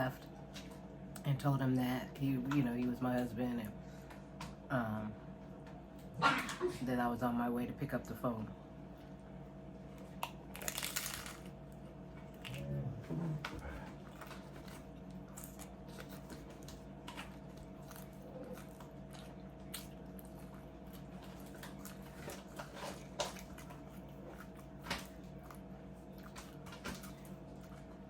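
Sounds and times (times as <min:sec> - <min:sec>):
chewing and crunching food: 0:00.1 - 0:01.3, 0:09.8 - 0:28.0.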